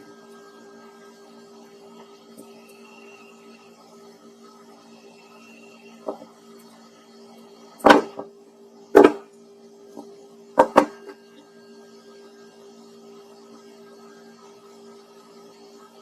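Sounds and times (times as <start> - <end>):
knocks on a workbench: 9.0 - 9.2, 10.6 - 11.0.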